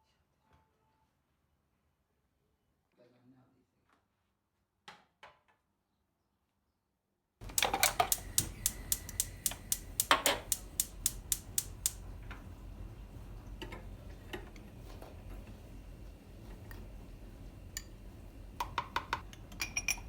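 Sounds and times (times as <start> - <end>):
sharp taps and knocks: 7.4 - 12.0.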